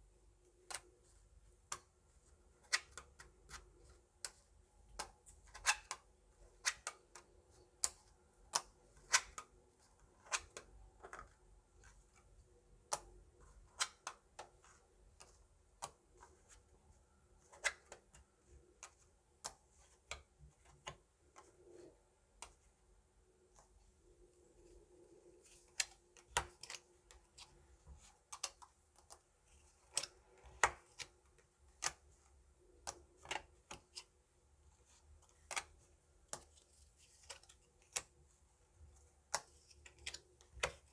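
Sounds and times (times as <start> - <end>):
soft card rustles: 23.4 - 40.9.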